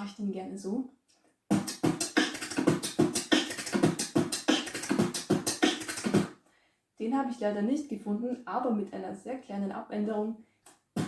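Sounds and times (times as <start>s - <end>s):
beatboxing: 1.5s - 6.3s.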